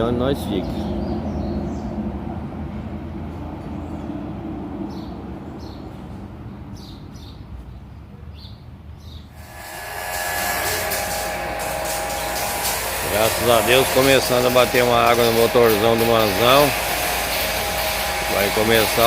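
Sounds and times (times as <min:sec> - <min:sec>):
birds chirping: 0:00.0 - 0:02.4, 0:03.6 - 0:09.4
vehicle rumble: 0:00.0 - 0:09.4.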